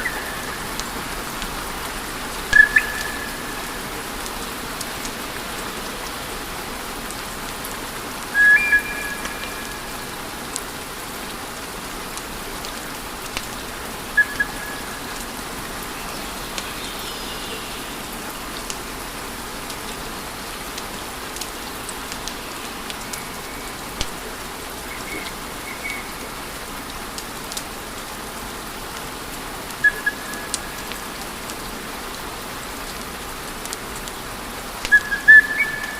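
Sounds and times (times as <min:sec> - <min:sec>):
high whistles: 0:08.4 - 0:10.0.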